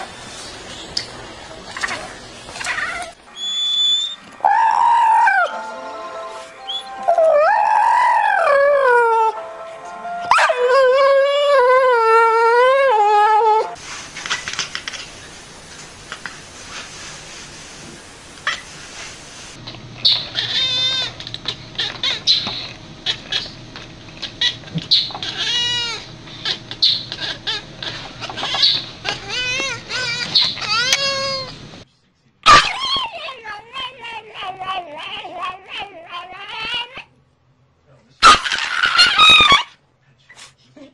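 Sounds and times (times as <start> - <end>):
cat meowing: 20.3 - 21.2, 25.2 - 27.6.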